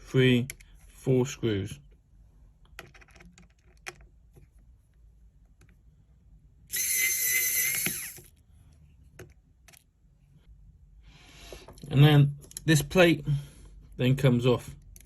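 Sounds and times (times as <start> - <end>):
high-pitched whirring: 6.7 - 8.2.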